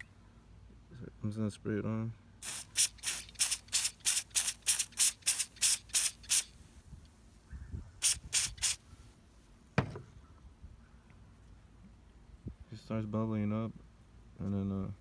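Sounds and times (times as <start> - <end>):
aerosol can spraying: 2.4 - 6.5, 8.0 - 8.8
knock: 9.8 - 10.1.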